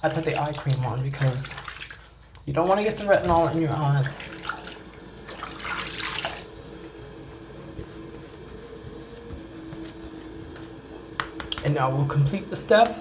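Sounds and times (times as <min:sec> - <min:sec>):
water splashing from sink tap: 0:00.0 - 0:07.2, 0:10.0 - 0:13.0.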